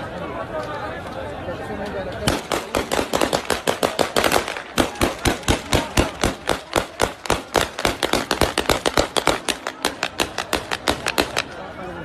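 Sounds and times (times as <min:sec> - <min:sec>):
rapid gunshots: 0:02.3 - 0:11.5.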